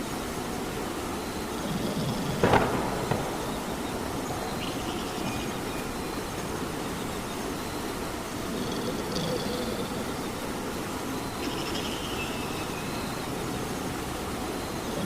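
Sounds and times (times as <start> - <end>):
steady rain falling: 0.0 - 15.0
sharp crack: 2.4 - 4.9.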